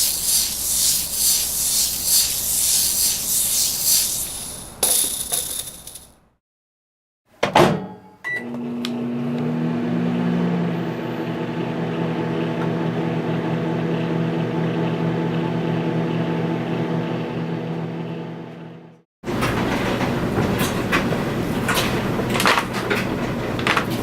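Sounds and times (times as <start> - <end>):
microwave oven humming: 7.8 - 24.0.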